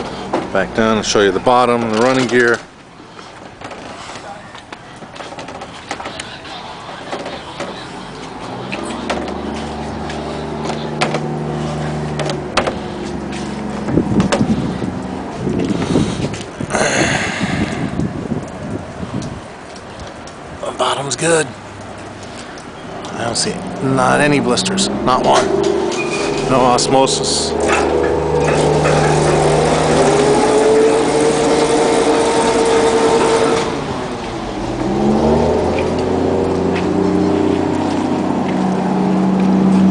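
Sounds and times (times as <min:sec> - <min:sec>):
lift engine running: 0:23.8 - 0:39.9.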